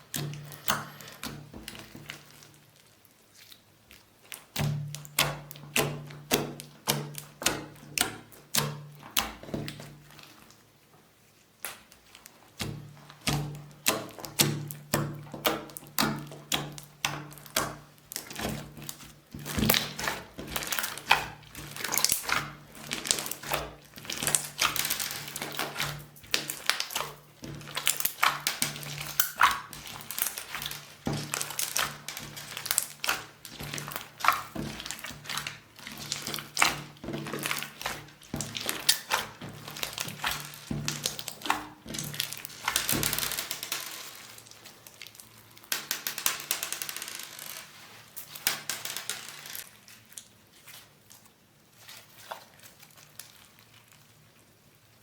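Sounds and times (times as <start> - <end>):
slime squeezed by hand: 13.1 - 45.7.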